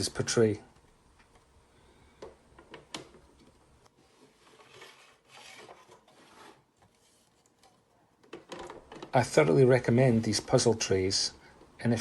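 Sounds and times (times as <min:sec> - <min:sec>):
faint rubbing and sliding: 0:03.9 - 0:07.6, 0:09.3 - 0:10.9.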